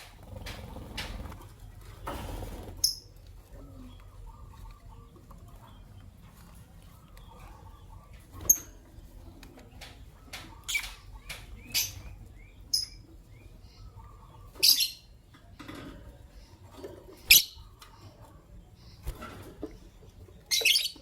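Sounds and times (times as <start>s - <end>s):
lovebirds chirping: 2.7s - 21.0s
soft bird chattering: 9.8s - 15.2s, 16.2s - 21.0s.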